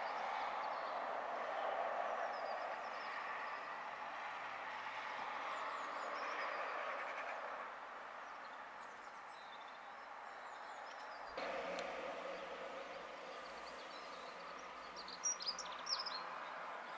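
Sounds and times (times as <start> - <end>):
small birds chirping: 8.2 - 16.9.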